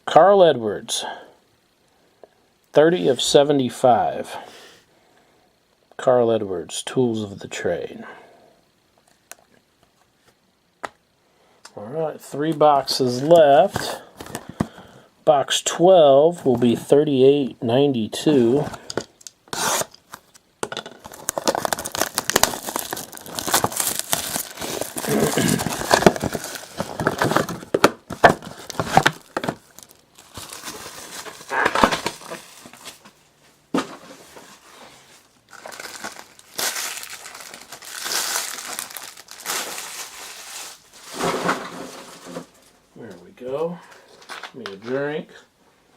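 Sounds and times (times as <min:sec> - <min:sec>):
plastic wrapping tearing and crinkling: 0:19.2 - 0:20.4, 0:21.0 - 0:33.0, 0:35.5 - 0:42.6.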